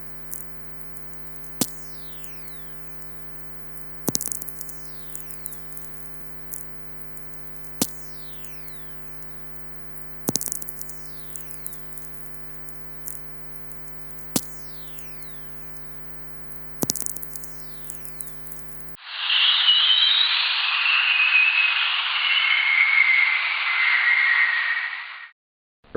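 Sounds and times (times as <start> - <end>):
sharp crackling clicks: 0.0 - 19.0
steady hum: 0.0 - 19.0
falling whistle tones: 19.0 - 24.3.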